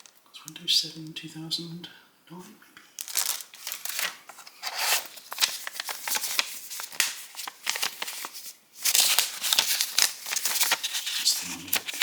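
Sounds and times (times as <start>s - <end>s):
paper and packaging crinkling: 3.0s - 12.0s.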